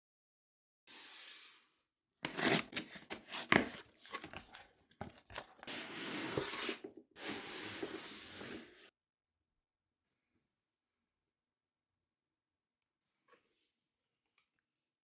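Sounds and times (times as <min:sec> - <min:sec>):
packaging tearing: 0:02.2 - 0:05.7
packaging rubbing: 0:02.2 - 0:06.8.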